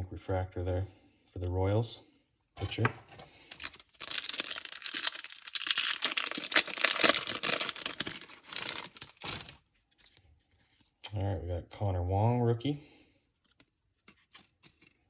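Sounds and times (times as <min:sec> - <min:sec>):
foil wrapper tearing and crinkling: 0:03.4 - 0:09.6.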